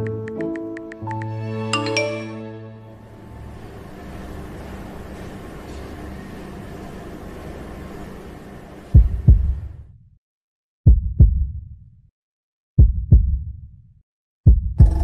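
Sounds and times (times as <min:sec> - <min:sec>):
low ambient bed: 0:02.9 - 0:09.9
heartbeat thumps: 0:08.9 - 0:09.8, 0:10.9 - 0:11.7, 0:12.8 - 0:13.6, 0:14.4 - 0:15.0.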